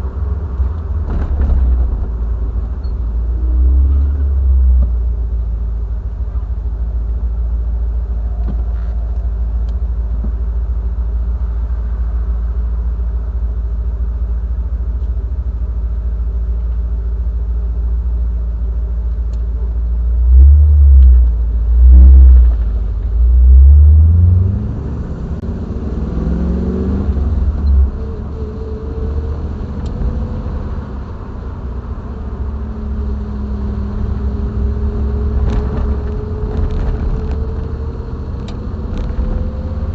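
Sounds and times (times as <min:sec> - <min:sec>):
car engine driving: 0:00.0 - 0:39.9.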